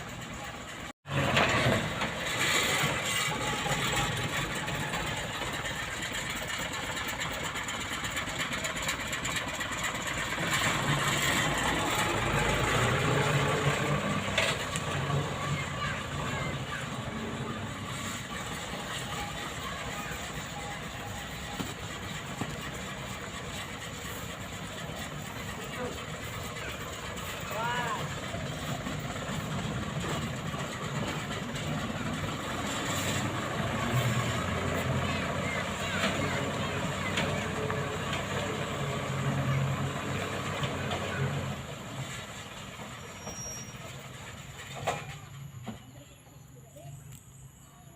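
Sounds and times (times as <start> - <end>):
heavy machinery rumbling and clattering: 0.0 - 46.2
engine running steadily: 0.0 - 47.6.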